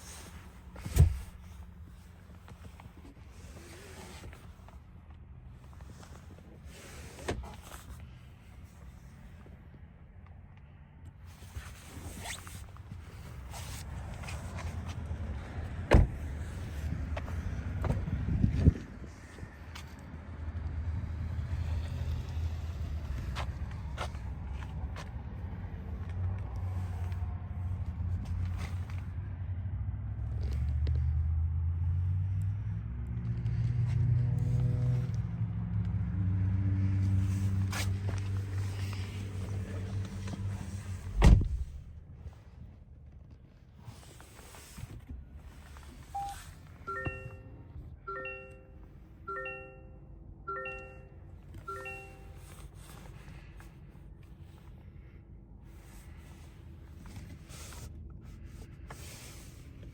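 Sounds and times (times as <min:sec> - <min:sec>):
car road and drivetrain rumble: 0:00.0 - 0:59.9
short beep: 0:46.2 - 0:52.4
multi-note warning chime: 0:46.9 - 0:52.4.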